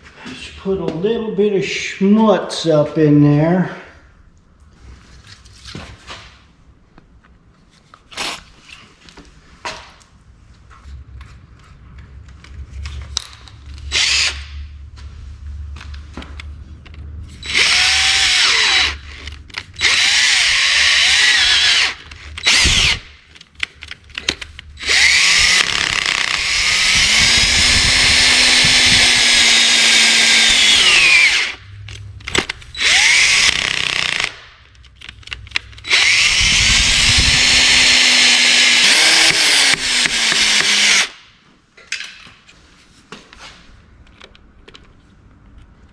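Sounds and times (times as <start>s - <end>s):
electric drill: 13.9s - 14.5s, 17.3s - 23.1s, 24.8s - 31.6s, 32.7s - 34.5s, 35.8s - 41.2s.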